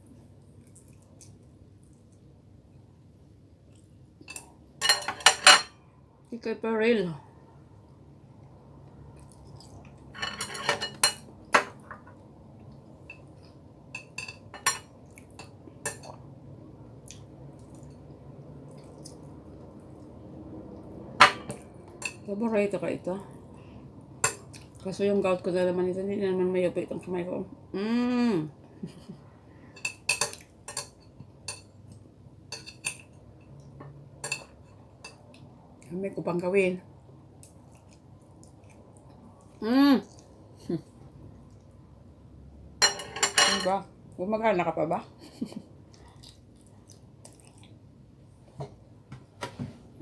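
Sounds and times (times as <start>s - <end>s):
cutlery clinking against a plate: 4.3s - 5.8s, 10.1s - 12.1s, 14.0s - 16.2s, 21.2s - 22.3s, 29.8s - 31.8s, 32.5s - 35.2s, 42.8s - 43.8s.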